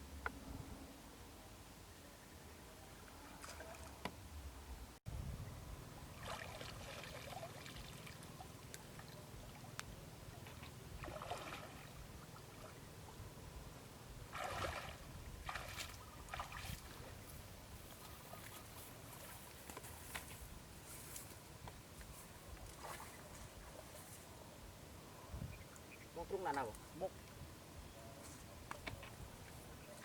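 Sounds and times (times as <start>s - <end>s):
shallow water sloshing and splashing: 6.1s - 9.6s, 10.4s - 12.8s, 14.3s - 17.3s.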